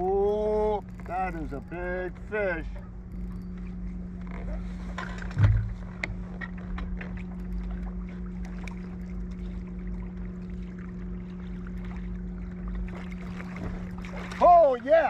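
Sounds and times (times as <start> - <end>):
steady low hum: 0.0 - 15.0
loud thump: 5.4 - 5.9.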